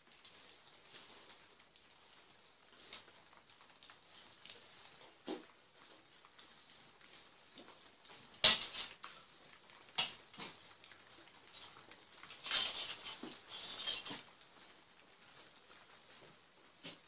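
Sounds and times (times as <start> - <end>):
metal rattling and scraping: 12.4 - 14.3.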